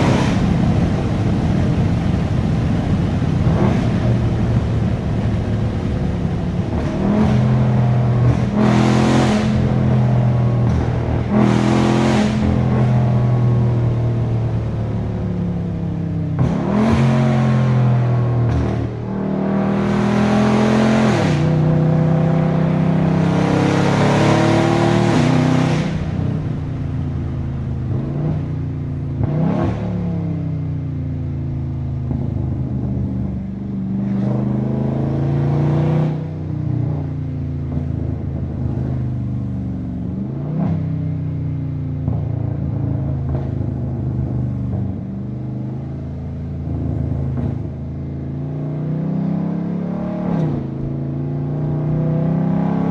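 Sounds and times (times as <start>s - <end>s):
loud engine accelerating: 0.0s - 30.4s, 32.0s - 37.1s, 46.6s - 52.9s.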